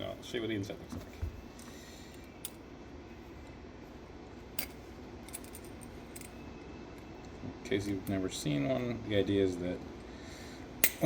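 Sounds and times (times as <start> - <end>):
low background hum: 0.0 - 11.0
metallic clicks of small parts: 10.8 - 11.0.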